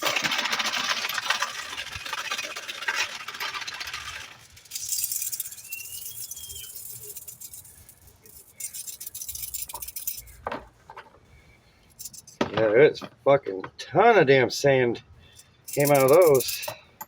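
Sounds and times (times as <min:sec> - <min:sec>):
metal balls rattling in metal pan: 0:00.0 - 0:10.5, 0:12.0 - 0:12.4, 0:15.7 - 0:16.8.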